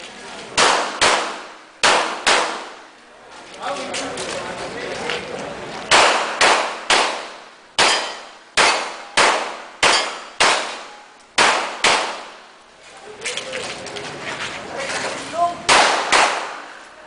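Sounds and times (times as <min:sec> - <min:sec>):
pistol shots with ringing echo: 0:00.6 - 0:02.8, 0:05.9 - 0:12.4, 0:15.7 - 0:16.7.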